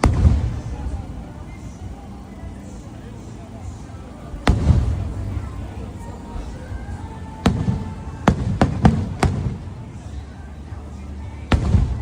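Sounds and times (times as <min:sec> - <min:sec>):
fireworks bursting: 0:00.0 - 0:12.0
low rumble: 0:00.0 - 0:12.0.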